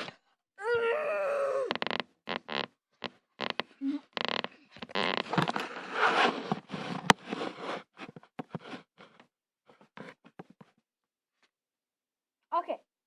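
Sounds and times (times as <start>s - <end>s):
rustling and scraping of handled objects: 1.8s - 10.8s.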